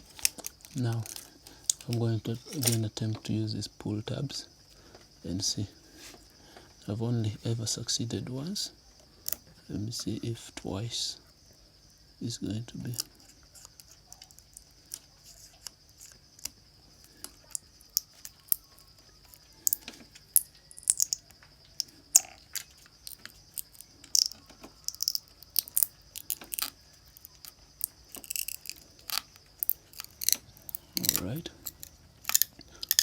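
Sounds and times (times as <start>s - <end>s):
insects chirring: 0.0s - 33.0s.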